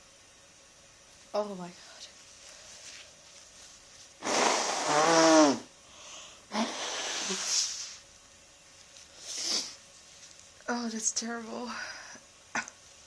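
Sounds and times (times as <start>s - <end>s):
person sneezing: 4.2s - 5.7s, 6.5s - 7.8s.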